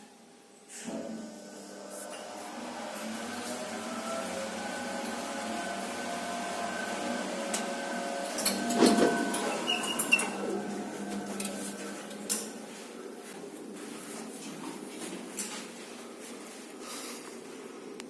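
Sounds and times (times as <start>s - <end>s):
lift drive hum: 1.3s - 13.2s
lift stopping clunk: 2.1s - 12.6s
lift doors clicking and knocking: 7.4s - 11.6s.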